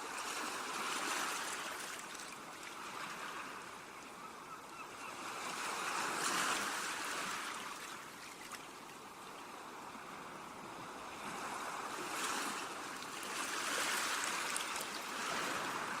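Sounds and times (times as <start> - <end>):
ocean waves washing against rocks: 11.3 - 16.0.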